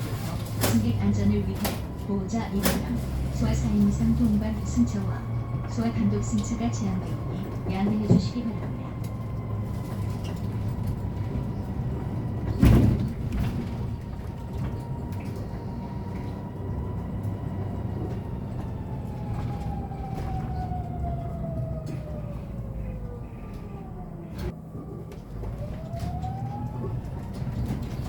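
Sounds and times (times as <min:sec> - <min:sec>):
electric bus motor whining: 0:00.0 - 0:28.0
road rumble: 0:00.0 - 0:28.0.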